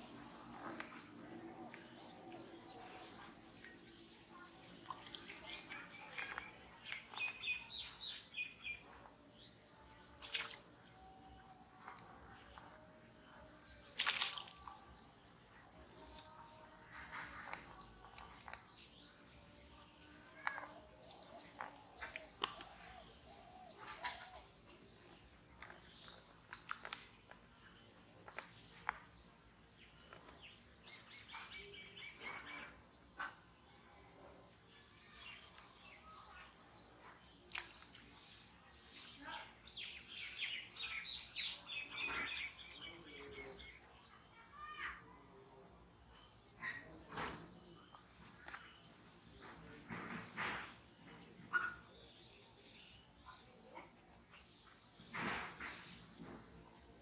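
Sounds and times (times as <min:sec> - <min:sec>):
bird chirps and calls: 0:00.0 - 0:09.0, 0:51.4 - 0:53.8.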